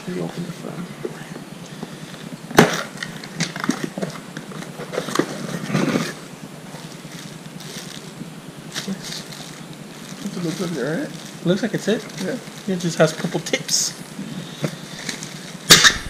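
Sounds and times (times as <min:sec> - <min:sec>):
package being unwrapped: 0:08.7 - 0:13.4.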